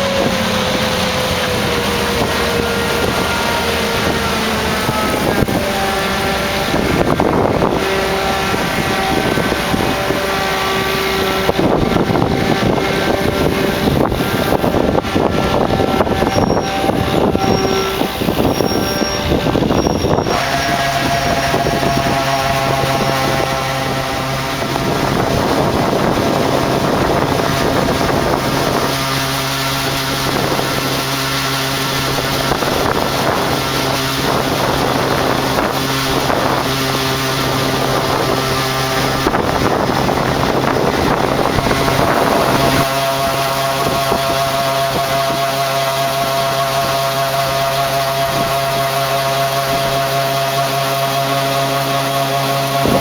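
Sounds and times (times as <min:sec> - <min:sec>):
combine harvester running: 0:00.0 - 0:53.0.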